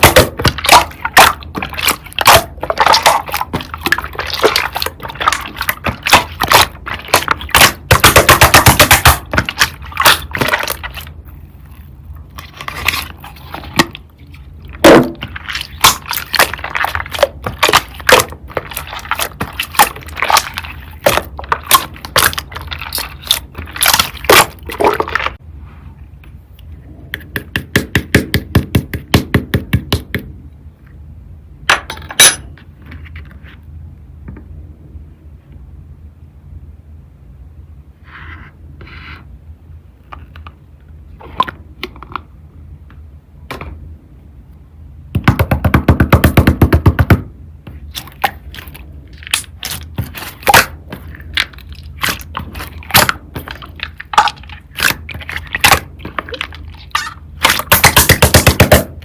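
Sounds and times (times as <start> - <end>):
slime squishing with clicks and pops: 0.0 - 14.1, 14.7 - 25.4, 45.2 - 59.0.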